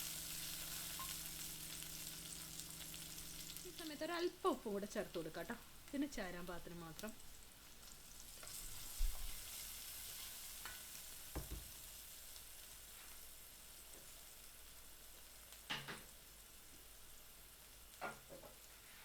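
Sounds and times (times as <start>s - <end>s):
frying in oil sizzle: 0.0s - 19.0s
spoon knocking against pan: 11.3s - 11.7s.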